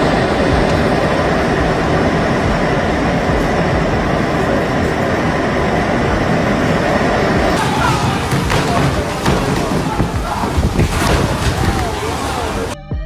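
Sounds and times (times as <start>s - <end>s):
storm wind roaring: 0.0s - 12.8s.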